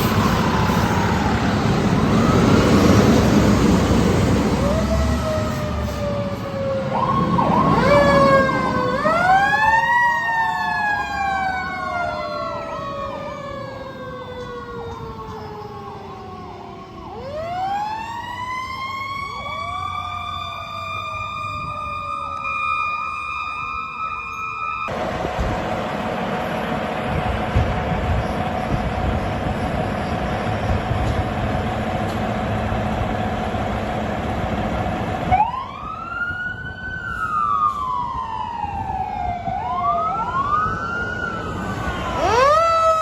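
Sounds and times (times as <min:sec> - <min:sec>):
wailing siren: 0:00.0 - 0:43.0
fast repeating siren yelp: 0:04.6 - 0:24.9, 0:35.3 - 0:43.0.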